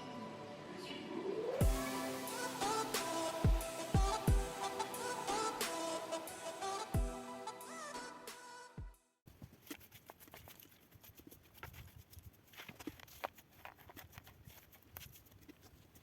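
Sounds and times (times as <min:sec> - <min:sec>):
background music: 0:00.0 - 0:09.0.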